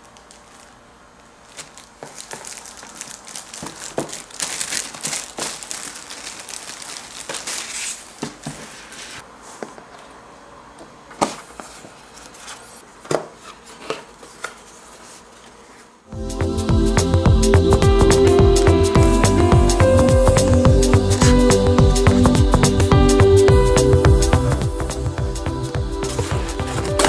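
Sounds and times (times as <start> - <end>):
packaging crinkling and rustling: 0.0 - 9.2, 26.1 - 27.0.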